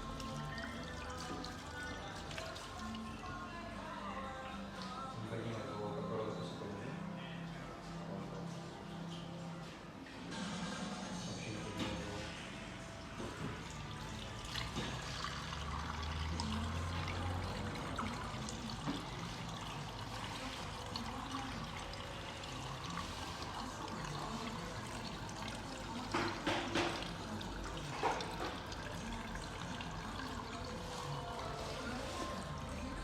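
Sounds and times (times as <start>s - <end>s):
water running and splashing: 0.0s - 3.3s, 13.3s - 33.0s.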